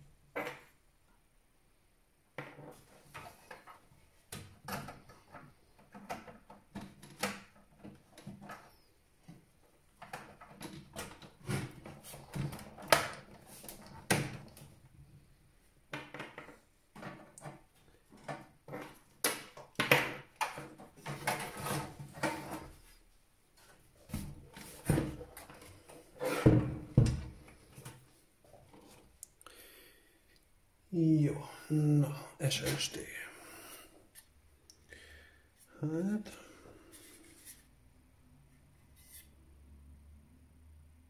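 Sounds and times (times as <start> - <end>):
hands handling computer parts: 16.0 - 22.9.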